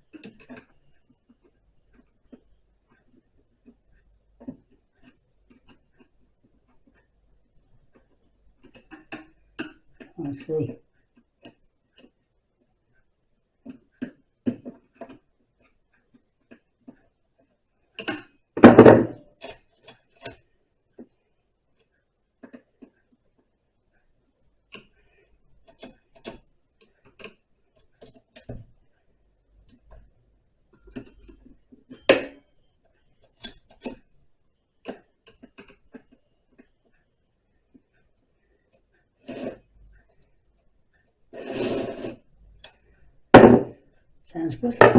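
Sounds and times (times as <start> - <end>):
clattering knock: 18.6 - 19.2, 43.4 - 43.8.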